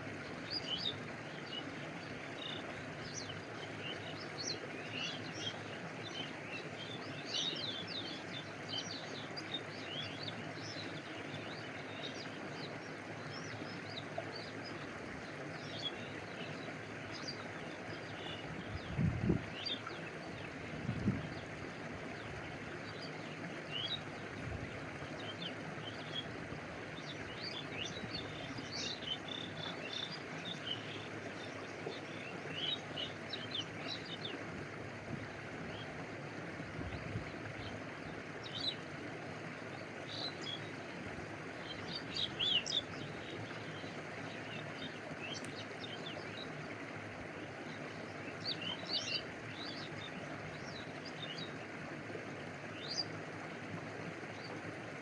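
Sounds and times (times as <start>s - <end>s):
stream rushing: 0.0s - 55.0s
water lapping: 0.0s - 55.0s
small birds chirping: 27.0s - 34.4s, 41.6s - 46.5s.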